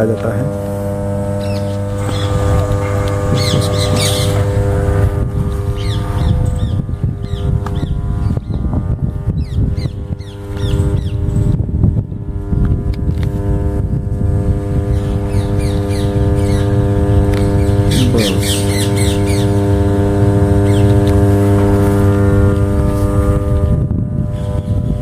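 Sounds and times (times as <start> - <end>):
birds chirping: 0.0 - 11.6, 14.6 - 25.0
power transformer humming: 0.0 - 25.0.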